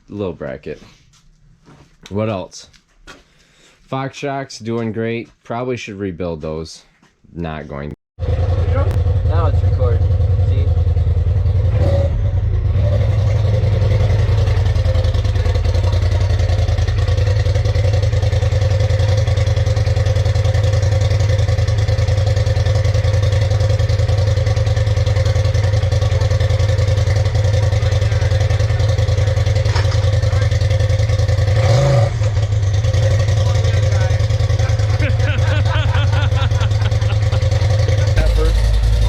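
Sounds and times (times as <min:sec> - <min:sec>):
off-road vehicle engine running: 0:08.2 - 0:39.0.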